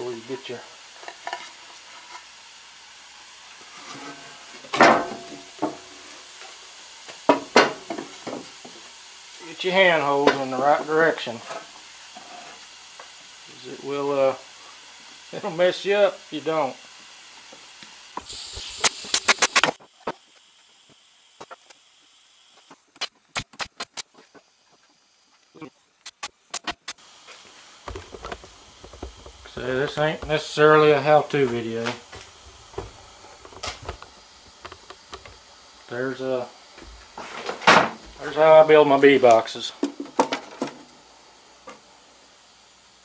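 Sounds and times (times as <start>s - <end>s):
low steady hiss: 0.0s - 19.0s, 27.0s - 43.0s
stapler snapping into wood: 26.0s - 27.0s.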